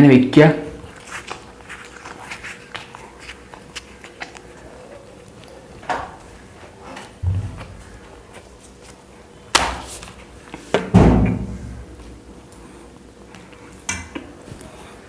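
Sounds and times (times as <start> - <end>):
thumps and knocks: 7.2 - 7.8.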